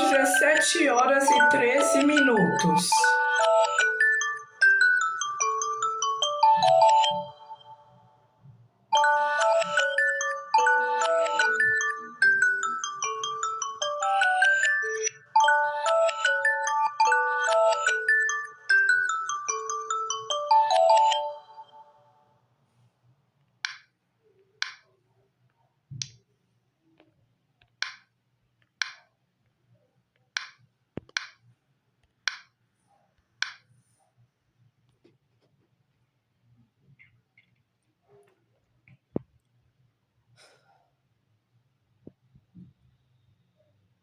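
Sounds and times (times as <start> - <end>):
marimba-like alarm tone: 0.0 - 4.1.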